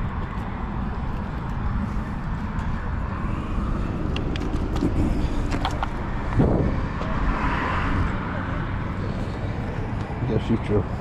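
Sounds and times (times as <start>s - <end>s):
wind buffeting microphone: 0.0s - 8.7s.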